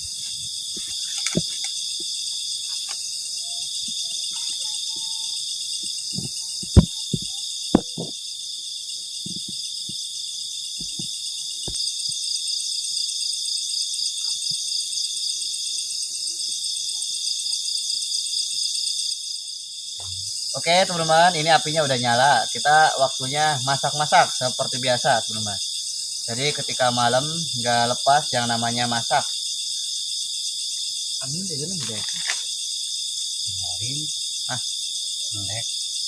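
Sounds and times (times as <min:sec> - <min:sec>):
night insect chorus: 0:00.0 - 0:36.0
sharp knocks: 0:06.2 - 0:08.2.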